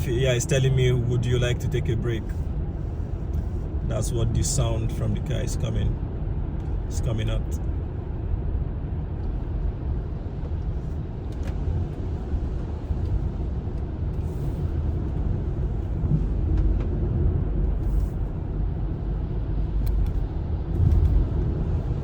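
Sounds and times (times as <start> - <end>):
car cabin road and engine rumble: 0.0 - 22.0.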